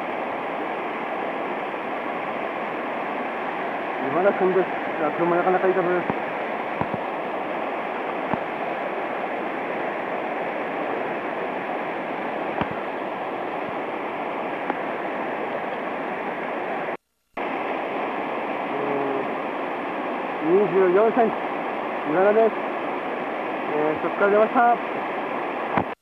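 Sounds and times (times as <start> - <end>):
stream rushing over rocks: 0.0 - 26.0.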